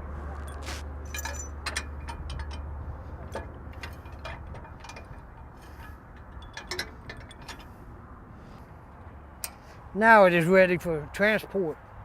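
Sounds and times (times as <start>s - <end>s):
tractor engine idling: 0.0s - 9.8s
metal clinks and taps: 1.1s - 7.7s.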